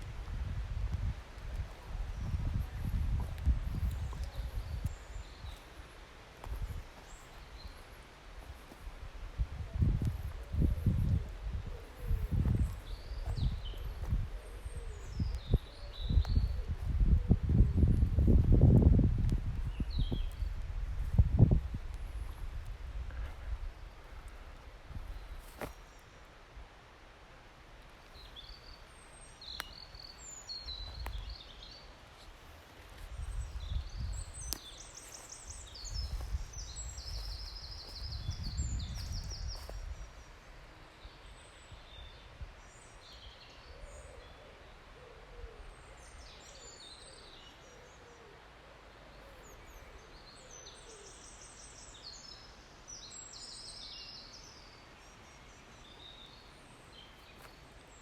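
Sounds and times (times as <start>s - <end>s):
wind rumble on microphone: 0.0s - 25.5s, 30.5s - 31.6s, 32.4s - 42.9s
songbirds singing: 0.0s - 26.6s, 27.7s - 58.0s.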